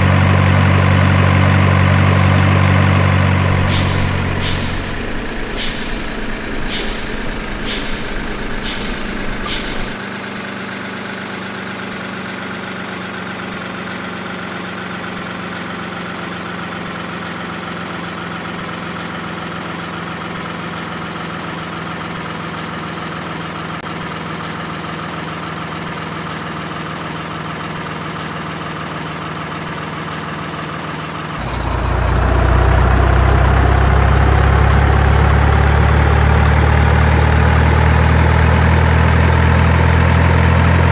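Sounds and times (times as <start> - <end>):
engine-like drone: 0.0 - 10.0, 31.4 - 40.9.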